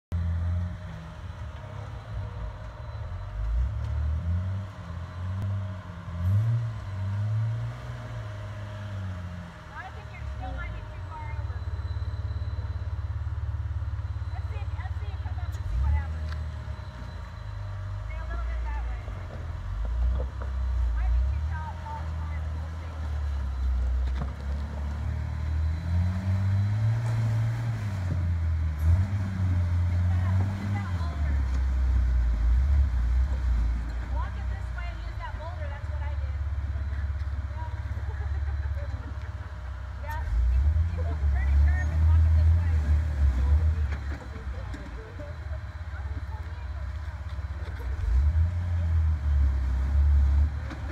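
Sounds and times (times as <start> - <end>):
vehicle engine revving: 0.0 - 50.9.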